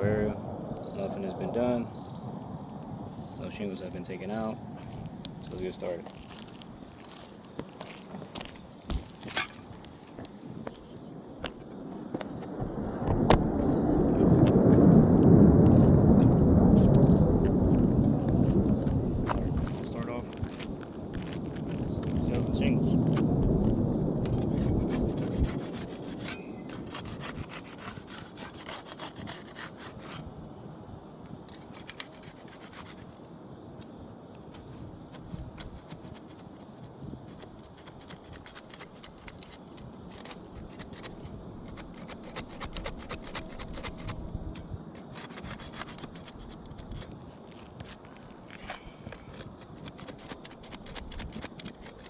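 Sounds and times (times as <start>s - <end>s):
hand tool scraping under shingles: 5.5s - 11.7s, 24.2s - 30.4s, 31.5s - 33.2s, 34.5s - 52.0s.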